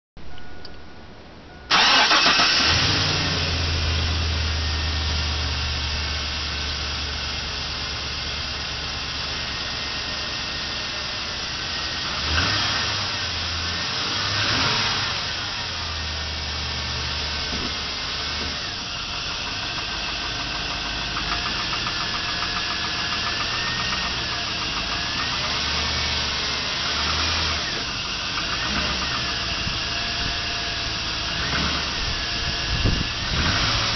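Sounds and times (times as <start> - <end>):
pickup engine starting and running: 0.6 - 33.9
engine knocking: 17.5 - 33.9.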